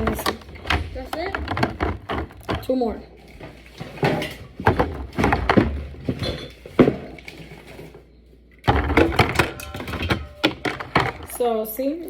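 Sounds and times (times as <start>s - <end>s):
bottles and cans clinking: 3.5s - 7.9s, 8.6s - 11.5s.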